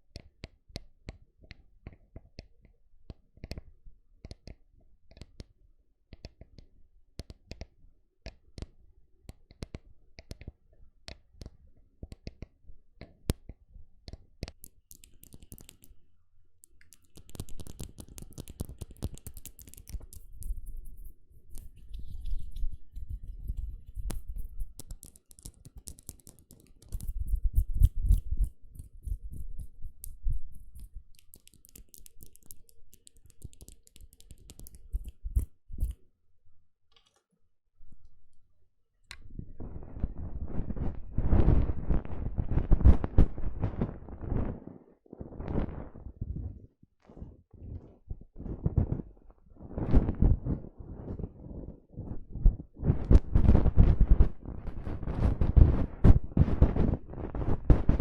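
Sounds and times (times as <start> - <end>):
light tapping and clicking: 9.3 - 16.0, 16.6 - 36.0
scratching and crackling: 14.1 - 16.0, 16.6 - 36.0, 39.1 - 58.0.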